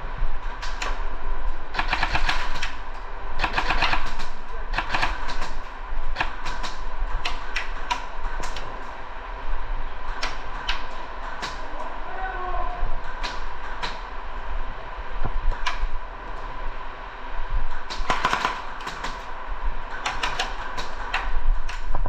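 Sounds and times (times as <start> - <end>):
airsoft guns firing: 3.4 - 5.6, 17.9 - 19.2.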